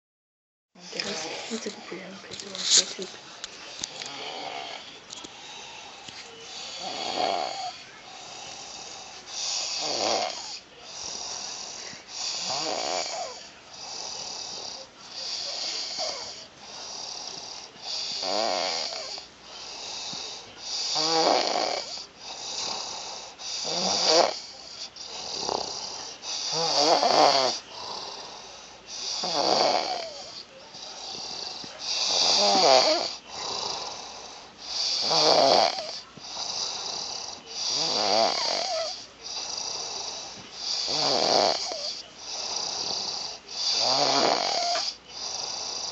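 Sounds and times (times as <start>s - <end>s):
man snoring: 3.9s - 45.9s.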